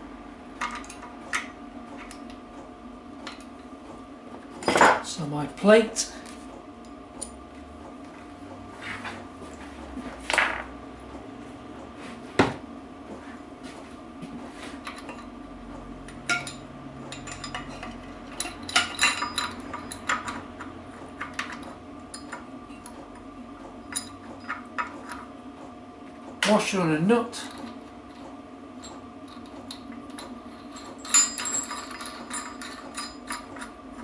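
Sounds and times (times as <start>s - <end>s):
steel parts clinking and knocking: 16.1s - 23.0s, 28.8s - 33.8s.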